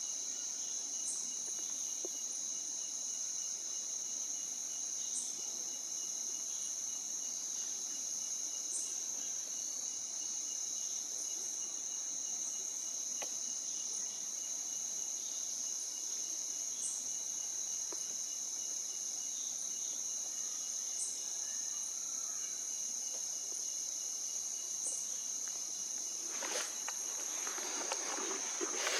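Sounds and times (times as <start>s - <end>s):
insects droning: 0.0s - 28.9s
rustling: 26.0s - 28.9s.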